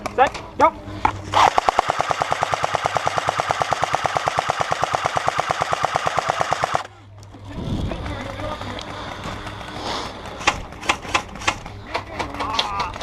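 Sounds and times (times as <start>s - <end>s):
airsoft gun firing full-auto: 1.4s - 6.9s.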